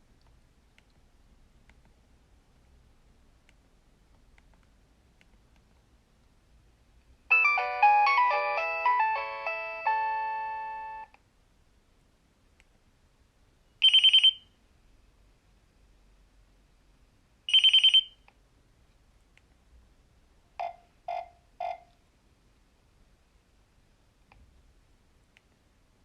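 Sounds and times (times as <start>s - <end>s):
phone chiming melody: 7.3s - 11.1s
rapid phone beeps: 13.8s - 14.4s, 17.5s - 18.1s.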